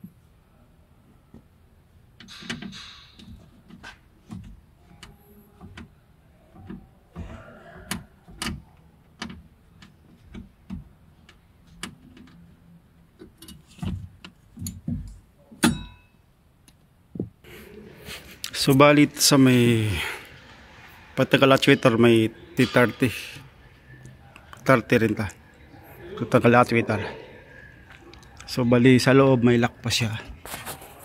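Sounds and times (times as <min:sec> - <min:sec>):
tools clicking and knocking: 0:02.2 - 0:05.9, 0:13.2 - 0:16.1.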